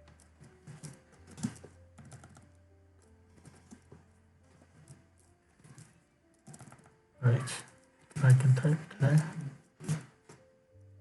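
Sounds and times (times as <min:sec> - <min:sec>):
computer keyboard typing: 0:00.2 - 0:02.5, 0:05.6 - 0:07.0.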